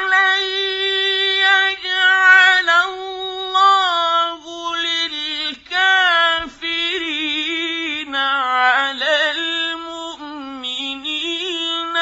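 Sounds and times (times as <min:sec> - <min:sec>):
man reciting melodically: 0:00.0 - 0:12.0.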